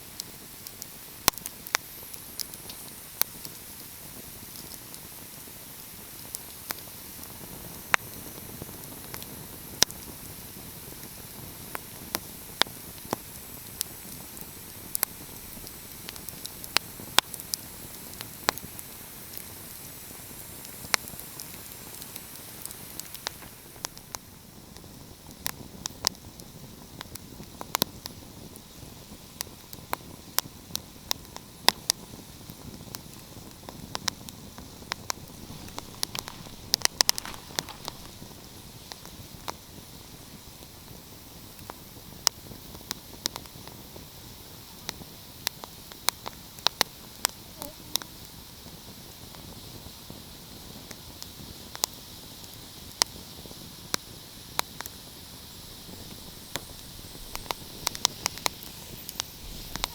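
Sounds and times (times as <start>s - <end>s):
steady hiss: 0.0s - 59.9s
wood fire crackling: 0.0s - 59.9s
sharp pops: 21.0s - 24.4s, 33.7s - 39.6s.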